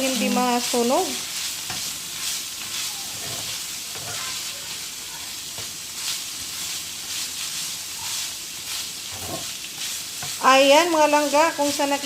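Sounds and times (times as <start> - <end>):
meat sizzling in a frying pan: 0.0 - 12.0
stirring scrapes: 1.3 - 4.6, 5.6 - 11.8.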